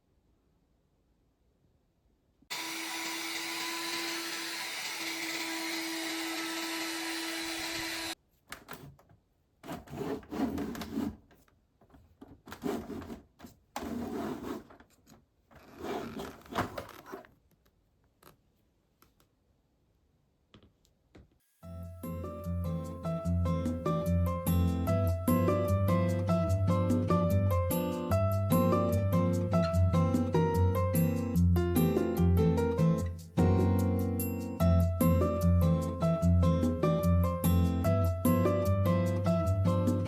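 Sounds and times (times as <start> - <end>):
vacuum cleaner humming: 2.5 - 8.2.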